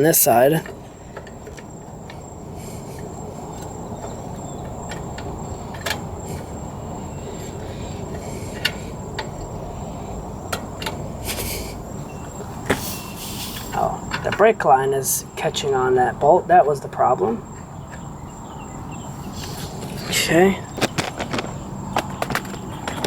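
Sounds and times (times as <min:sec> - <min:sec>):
low background rumble: 0:00.0 - 0:23.0.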